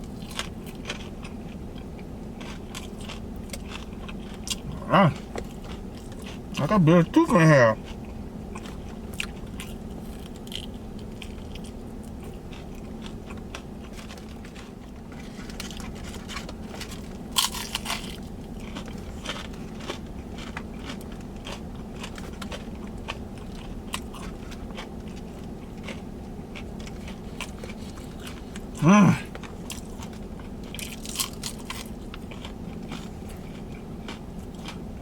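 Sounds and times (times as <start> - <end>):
chewing crunchy fried food: 0.0 - 35.0
steady low hum: 0.0 - 35.0.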